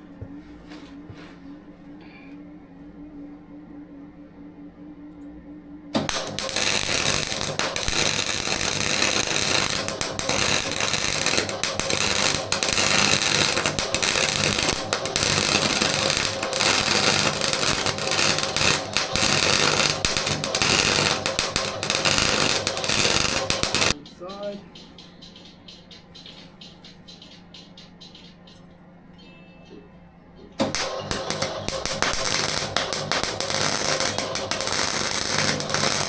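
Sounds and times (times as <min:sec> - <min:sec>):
arc welding crackle: 0:06.0 - 0:24.0, 0:30.6 - 0:36.0.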